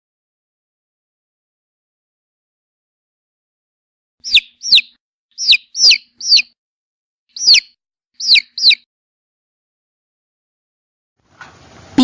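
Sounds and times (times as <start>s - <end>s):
chick peeping: 4.2s - 6.6s, 7.4s - 8.8s.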